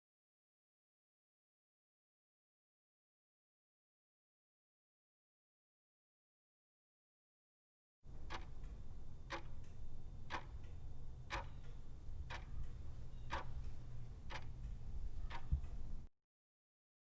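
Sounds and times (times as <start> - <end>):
clock ticking: 8.1 - 16.1
low steady hum: 8.1 - 16.1.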